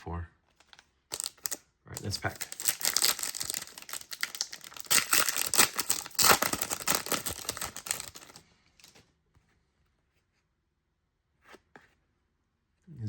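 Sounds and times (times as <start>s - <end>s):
wrapper tearing and crinkling: 0.7s - 8.9s.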